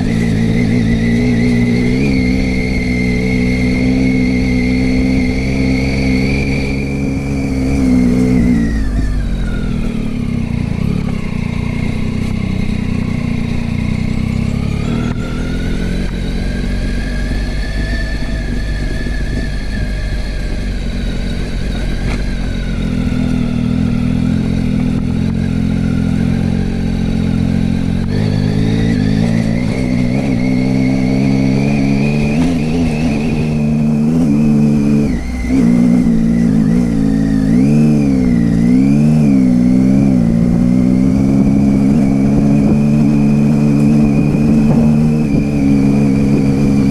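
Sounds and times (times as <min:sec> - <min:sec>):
motorcycle engine running: 0:00.0 - 0:46.9.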